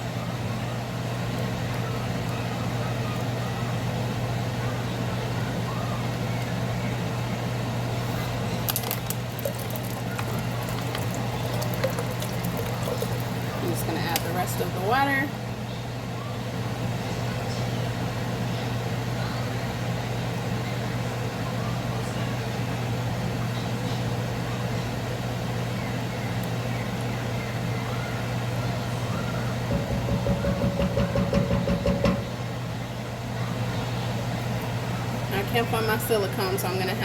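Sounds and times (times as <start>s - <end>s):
appliance motor humming: 8.1s - 14.9s, 27.9s - 32.7s.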